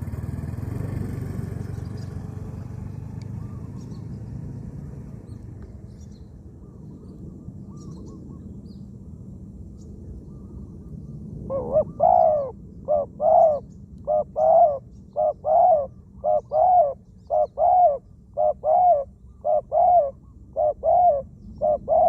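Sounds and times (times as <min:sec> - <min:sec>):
small birds chirping: 0:01.4 - 0:04.4, 0:05.1 - 0:09.0, 0:09.7 - 0:22.0
dove cooing: 0:11.5 - 0:22.0.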